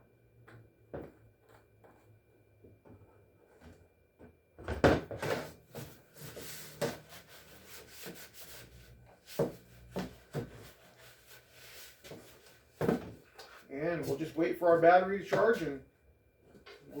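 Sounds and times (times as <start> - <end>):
knocks and thuds of objects: 4.6 - 5.9, 9.4 - 10.7, 12.8 - 13.2
rubbing and scraping: 5.2 - 12.6.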